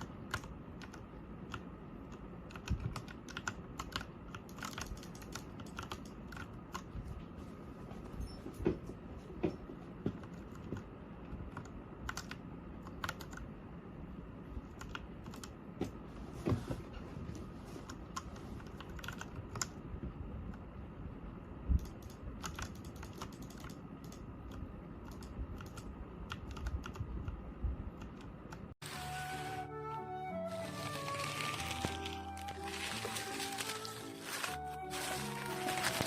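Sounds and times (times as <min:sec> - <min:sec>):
mechanical keyboard typing clicks: 0:00.0 - 0:06.9, 0:11.5 - 0:13.4, 0:18.1 - 0:19.8, 0:21.7 - 0:27.4.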